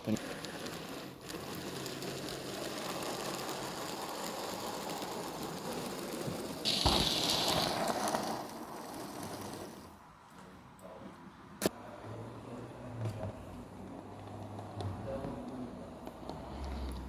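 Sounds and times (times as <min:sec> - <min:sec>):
model train motor whir: 0:00.0 - 0:10.0, 0:14.2 - 0:17.0
low thump: 0:06.8 - 0:07.7.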